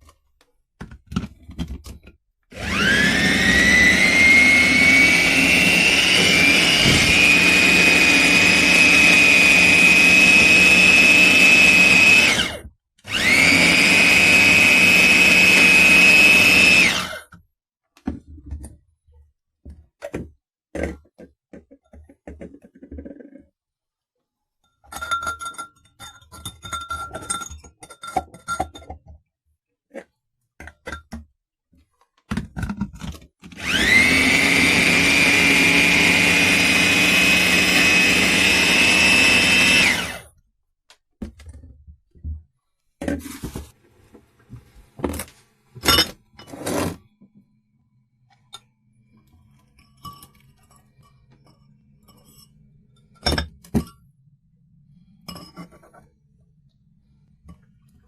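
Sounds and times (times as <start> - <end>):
food chopper motor whining: 2.5 - 17.4, 33.4 - 40.4.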